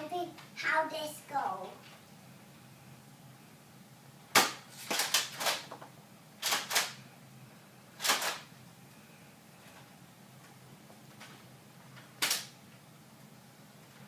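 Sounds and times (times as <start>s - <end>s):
dart blaster pumping and firing: 4.3s - 5.7s, 6.4s - 7.0s, 8.0s - 8.5s, 12.2s - 12.5s.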